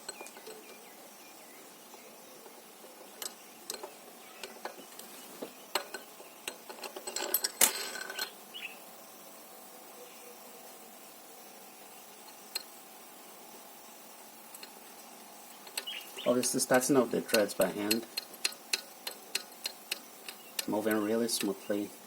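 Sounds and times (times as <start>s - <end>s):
metallic clicks of bolt threading: 17.2s - 21.6s.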